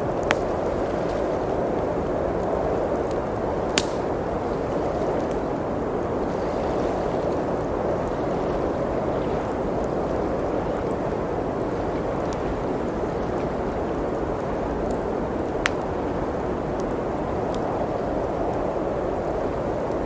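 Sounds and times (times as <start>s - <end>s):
wood fire crackling: 0.0s - 6.3s, 7.2s - 20.0s.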